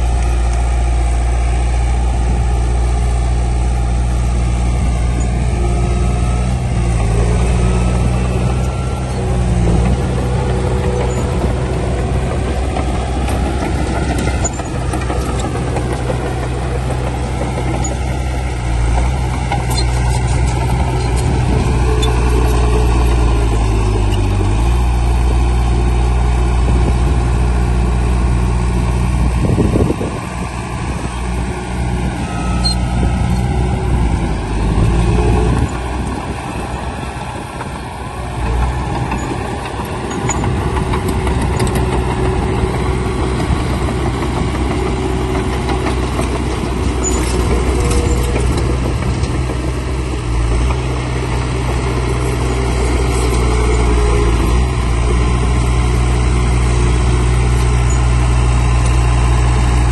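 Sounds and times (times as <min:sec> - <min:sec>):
heavy diesel engine under load: 0:00.0 - 0:59.9.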